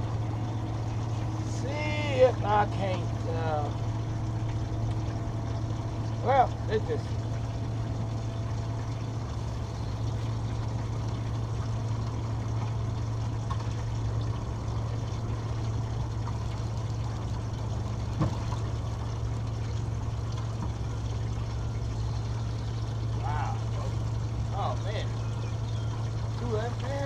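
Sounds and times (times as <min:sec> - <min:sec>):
motor humming: 0:00.0 - 0:27.0
water lapping and trickling: 0:00.0 - 0:27.0.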